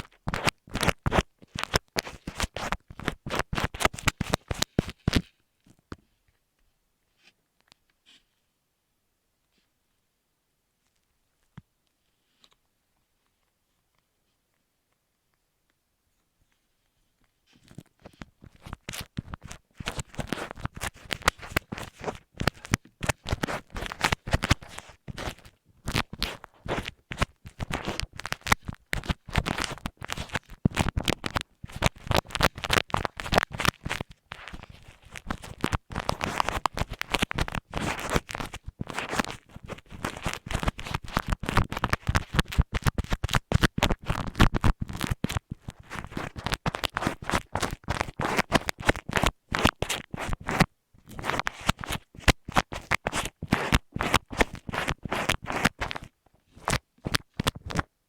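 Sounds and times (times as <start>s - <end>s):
scratching on microphone: 0.0s - 5.3s, 17.4s - 57.9s.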